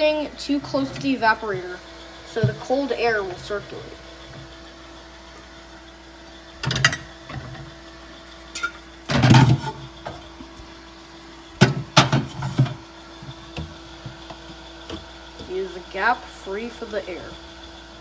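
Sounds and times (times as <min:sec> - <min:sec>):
objects knocking and clattering: 0:08.5 - 0:10.2, 0:11.6 - 0:15.6.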